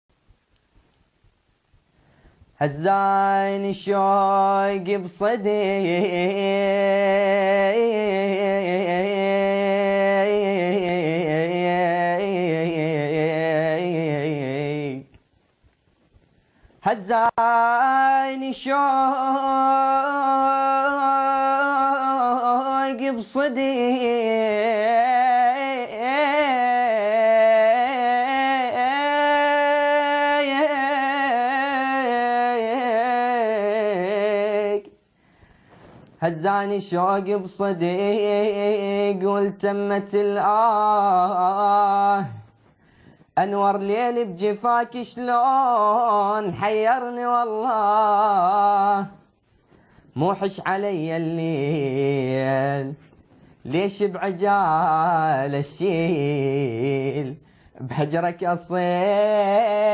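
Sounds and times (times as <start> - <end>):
man singing unaccompanied: 2.4 - 15.4, 16.7 - 35.1, 35.8 - 59.9.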